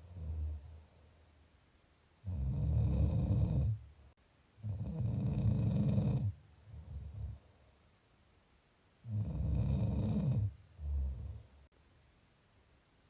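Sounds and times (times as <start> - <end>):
long low snores: 0.0 - 0.9, 2.2 - 3.8, 4.6 - 7.4, 9.0 - 11.6.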